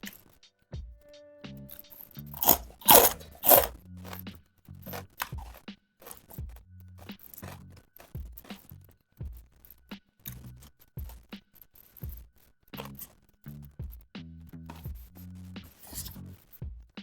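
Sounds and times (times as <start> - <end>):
background music: 0.0 - 11.4
crunchy fried fish being chewed: 2.2 - 4.2, 4.9 - 9.7, 10.3 - 13.2.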